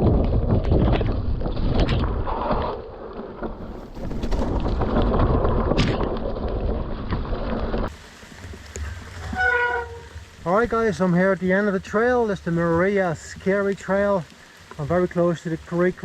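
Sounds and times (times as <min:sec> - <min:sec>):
wind buffeting microphone: 0:00.0 - 0:11.0
low rumble: 0:00.0 - 0:13.4
tyres rolling over mud and rock: 0:00.0 - 0:16.0.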